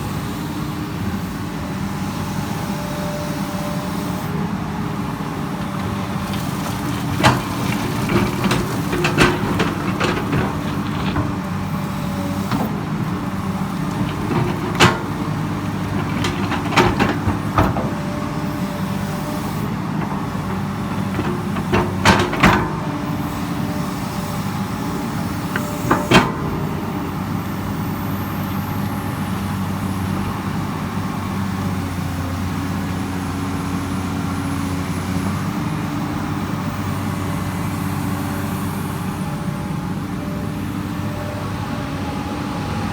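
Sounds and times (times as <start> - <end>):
excavator diesel engine running: 0.1 - 42.9
metallic knocks and clanks: 6.3 - 11.7, 12.3 - 18.3, 20.0 - 23.4, 25.4 - 27.8.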